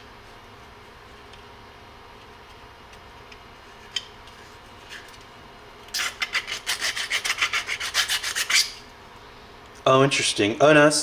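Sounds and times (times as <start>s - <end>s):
needle file rasping on plastic: 6.0s - 8.8s.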